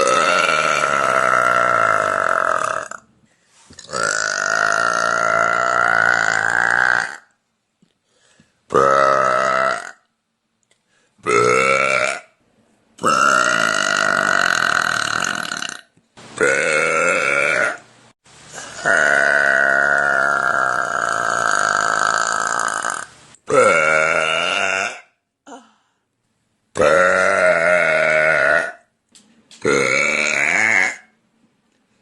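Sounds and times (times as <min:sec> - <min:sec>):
woman burping: 0:00.0 - 0:03.0, 0:03.8 - 0:07.3, 0:08.7 - 0:10.1, 0:13.0 - 0:15.8, 0:18.6 - 0:25.7, 0:26.8 - 0:28.9, 0:29.6 - 0:31.1.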